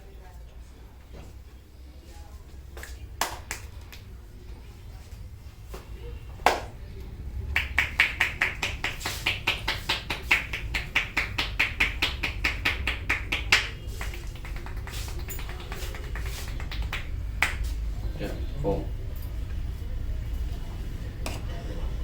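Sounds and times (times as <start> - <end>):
hands striking head: 7.6 - 17.7.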